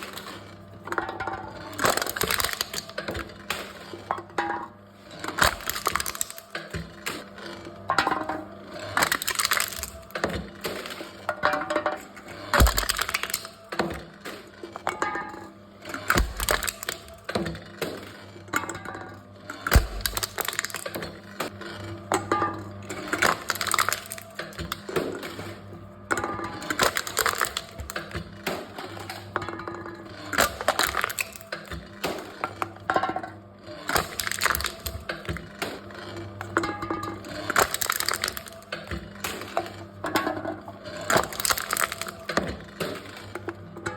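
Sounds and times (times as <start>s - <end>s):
cans being crushed: 1.6s - 3.3s, 5.3s - 7.2s, 8.8s - 10.8s, 12.6s - 14.0s, 15.9s - 17.3s, 19.7s - 21.2s, 23.0s - 25.0s, 26.6s - 28.3s, 30.3s - 32.2s, 33.8s - 35.8s, 37.2s - 39.6s, 40.9s - 43.2s.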